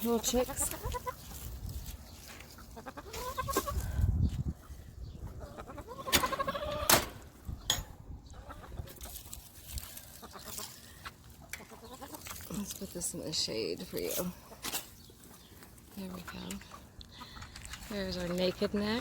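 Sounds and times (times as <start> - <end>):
hens calling: 0.1 - 1.5, 2.1 - 7.6, 8.2 - 12.5.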